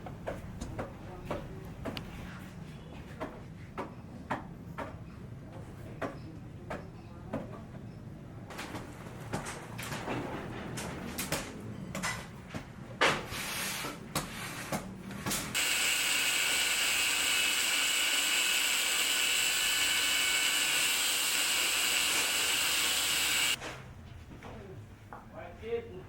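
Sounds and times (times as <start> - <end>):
power tool high whine: 15.6 - 23.6.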